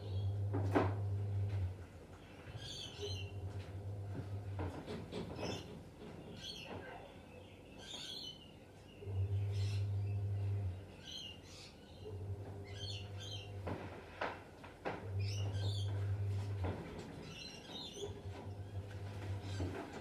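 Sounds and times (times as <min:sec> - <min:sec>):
birds chirping: 0:02.2 - 0:03.5, 0:05.4 - 0:13.6, 0:15.1 - 0:16.2.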